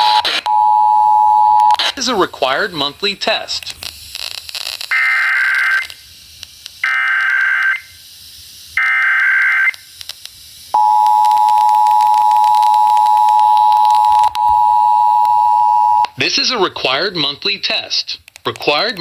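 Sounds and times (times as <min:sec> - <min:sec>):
buzzy warbling data bursts: 0:00.0 - 0:00.5.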